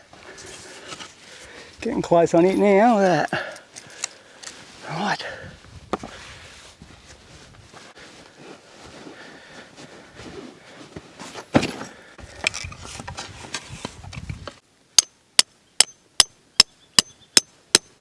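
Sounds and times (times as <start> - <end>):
rustling and handling: 0.1 - 5.1, 6.0 - 14.0.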